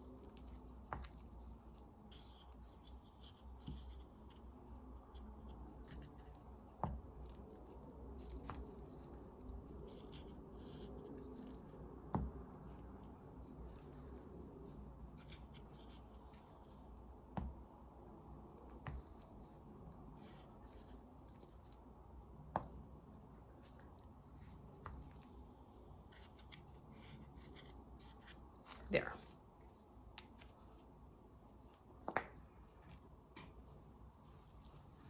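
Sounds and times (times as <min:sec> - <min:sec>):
faint steady hiss: 0:00.0 - 0:35.0.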